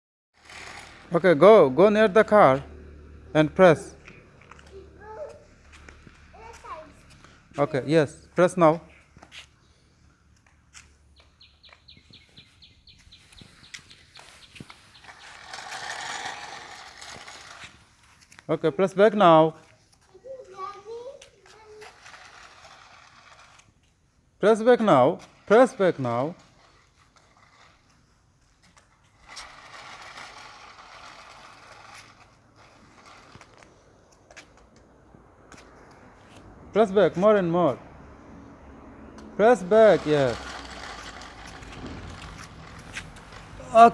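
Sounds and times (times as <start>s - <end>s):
toy car motor whirring: 0.4s - 2.6s, 3.3s - 7.8s, 10.8s - 19.2s, 19.9s - 24.0s, 24.6s - 34.8s, 39.4s - 43.9s.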